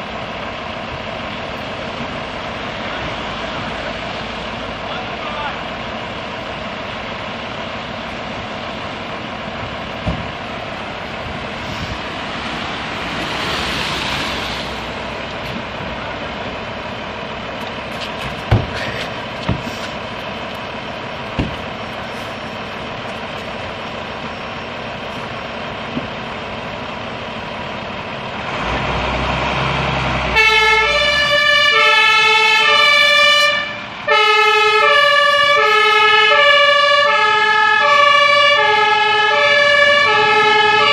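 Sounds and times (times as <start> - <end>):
fire engines running: 0.0 - 40.9
sharp knocks: 10.0 - 10.4, 18.0 - 19.8, 21.3 - 21.7
engine revving: 11.0 - 16.6, 28.2 - 33.6
two-tone siren: 30.3 - 40.9.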